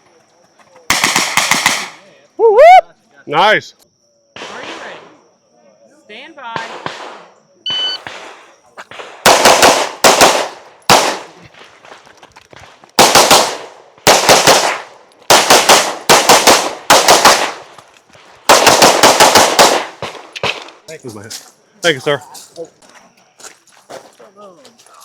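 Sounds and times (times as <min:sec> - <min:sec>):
rapid pistol shots: 0:00.9 - 0:02.0, 0:04.4 - 0:05.2, 0:06.6 - 0:07.4, 0:08.0 - 0:11.8, 0:13.0 - 0:17.8, 0:18.4 - 0:20.8.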